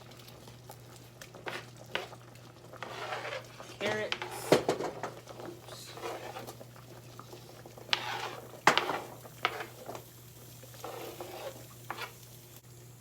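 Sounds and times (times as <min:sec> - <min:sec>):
knock against pot: 0:04.5 - 0:05.2.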